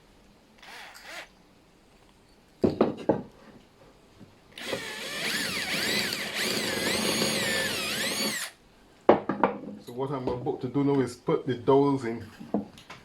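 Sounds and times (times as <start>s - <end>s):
power drill boring into wood: 0.6s - 1.3s, 4.6s - 8.6s.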